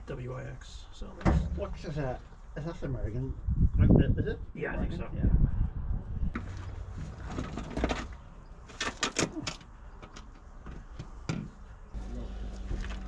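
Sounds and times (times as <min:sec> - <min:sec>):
low steady hum: 0:12.0 - 0:13.0.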